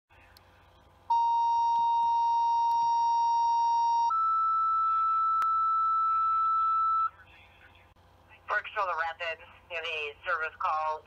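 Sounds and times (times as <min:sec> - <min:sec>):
two-tone pager alert: 0:01.1 - 0:07.1.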